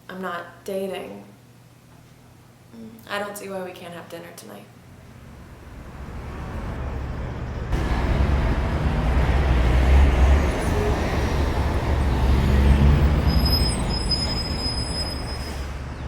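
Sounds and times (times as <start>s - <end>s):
heavy vehicles passing: 4.9s - 16.0s
thin high squeal: 13.2s - 15.8s.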